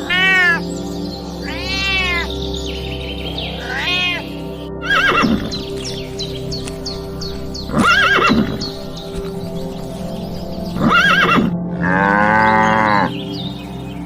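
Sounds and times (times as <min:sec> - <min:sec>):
animal calls: 0:00.0 - 0:00.6, 0:01.4 - 0:02.3, 0:03.6 - 0:13.2
background music: 0:00.0 - 0:14.0.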